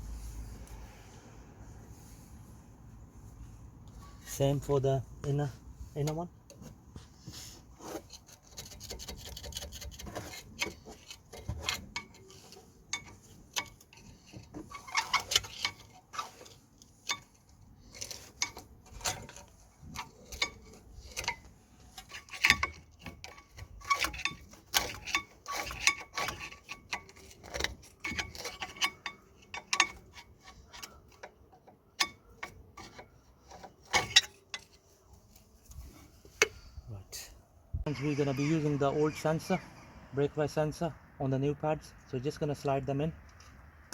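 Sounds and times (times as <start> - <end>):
hand tool scraping metal: 6.0 - 37.3.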